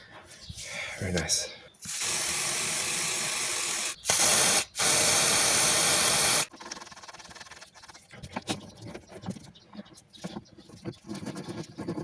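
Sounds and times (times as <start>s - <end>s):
pressurised spray hissing: 1.9s - 6.5s.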